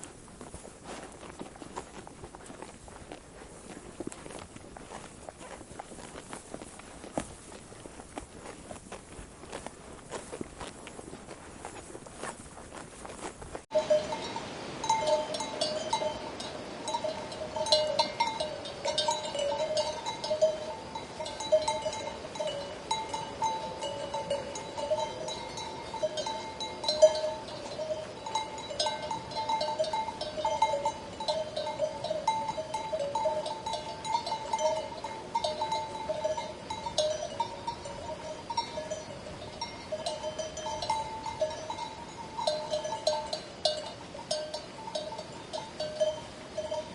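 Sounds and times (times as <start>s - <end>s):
livestock bells clanking: 13.7s - 46.9s.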